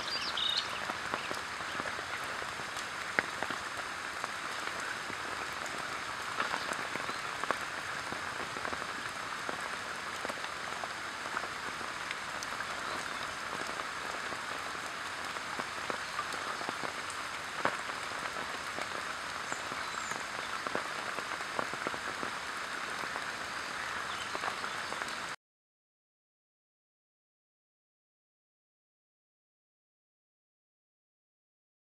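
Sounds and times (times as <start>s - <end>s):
steady rain falling: 0.0s - 25.4s.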